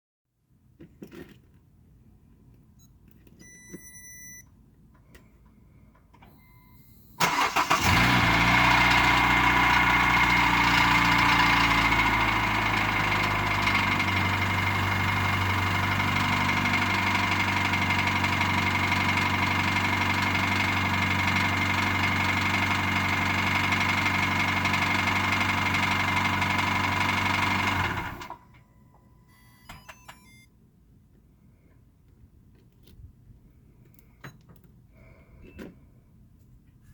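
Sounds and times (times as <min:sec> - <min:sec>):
short electronic beeps: 0:02.8 - 0:04.5, 0:06.3 - 0:07.2, 0:28.6 - 0:30.5
car engine cranking and idling: 0:05.9 - 0:28.6.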